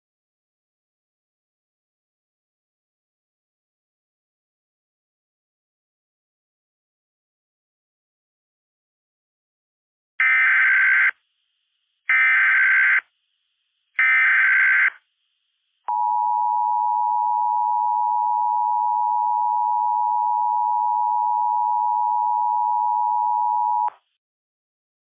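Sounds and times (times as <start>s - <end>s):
steady two-tone beep: 15.9s - 23.9s.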